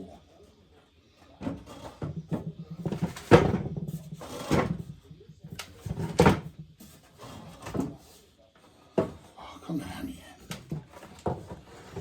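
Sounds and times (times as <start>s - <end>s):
knocks bumps and scrapes of handling: 1.4s - 5.0s, 5.7s - 8.2s, 10.6s - 12.0s.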